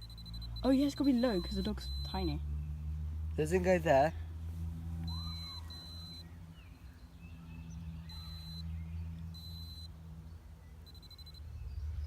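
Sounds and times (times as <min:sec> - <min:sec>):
high warning beeps: 0:00.0 - 0:02.4, 0:05.1 - 0:06.2, 0:08.1 - 0:08.7, 0:09.4 - 0:09.9, 0:10.9 - 0:11.4
steady low hum: 0:00.0 - 0:12.0.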